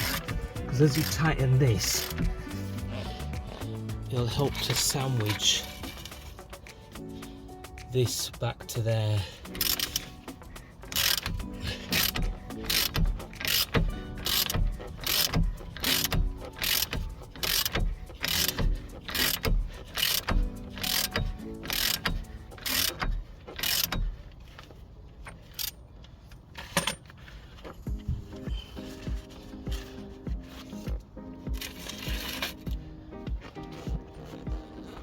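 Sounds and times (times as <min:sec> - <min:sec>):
ratchet wrench clicking: 0:00.0 - 0:07.9, 0:09.4 - 0:25.8, 0:31.6 - 0:35.0.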